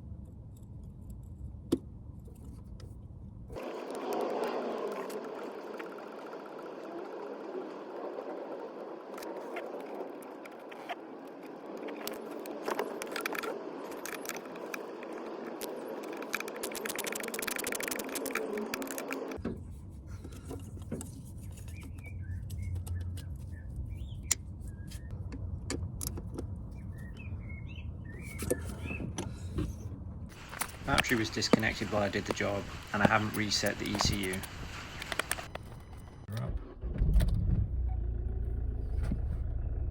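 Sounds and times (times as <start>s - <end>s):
rustling and clicking handling noise: 9.2s - 26.6s, 28.2s - 36.0s
birds chirping faintly: 20.3s - 25.2s.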